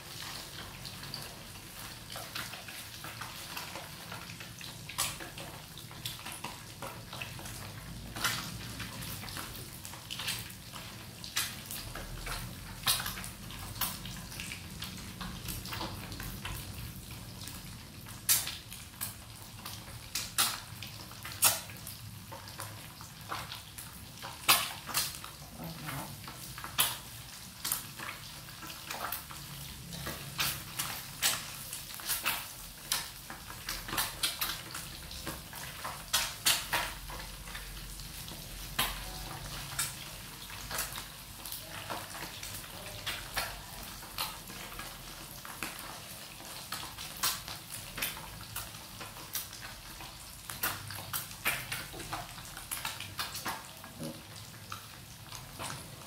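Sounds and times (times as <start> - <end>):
eggs frying in hot oil: 0.0 - 56.0
sharp pops of frying oil: 2.1 - 8.6, 18.1 - 25.3, 26.6 - 29.4, 30.0 - 39.1, 46.5 - 53.8.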